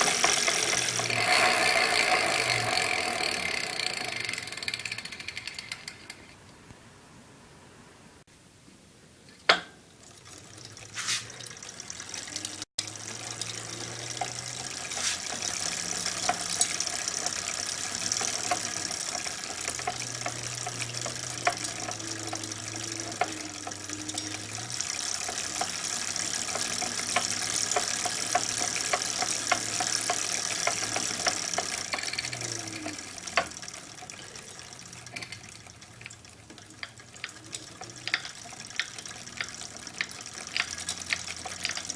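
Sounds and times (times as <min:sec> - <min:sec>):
electric motor hum: 0:00.0 - 0:06.2, 0:12.1 - 0:35.2
electric bike rushing hiss: 0:00.0 - 0:06.3, 0:10.9 - 0:35.2
pedaling clicks and knocks: 0:00.0 - 0:06.4, 0:12.3 - 0:41.9.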